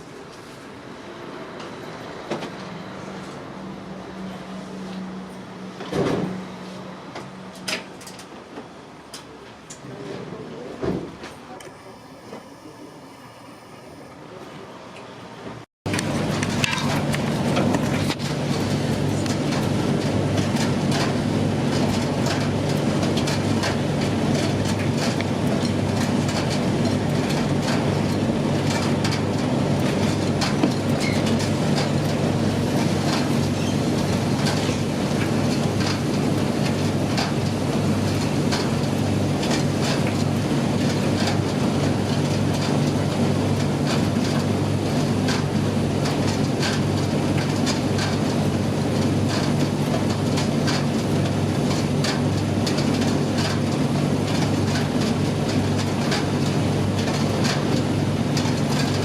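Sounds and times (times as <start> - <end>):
tumble dryer hum: 15.4 - 59.0.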